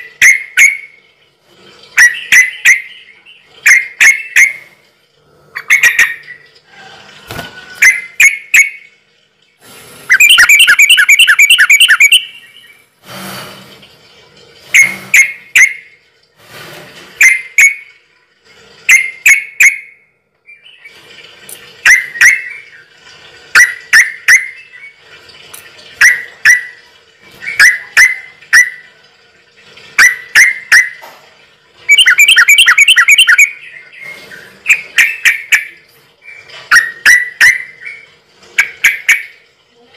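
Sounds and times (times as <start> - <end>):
bird sharp chirps: 10.1 - 12.7, 31.9 - 33.6.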